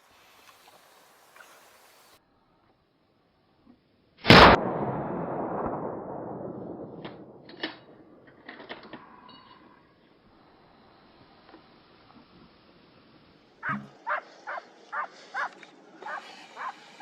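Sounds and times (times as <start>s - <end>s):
faint clicks: 0.4s - 1.8s, 14.8s - 16.8s
gunshot with echo: 4.2s - 8.4s.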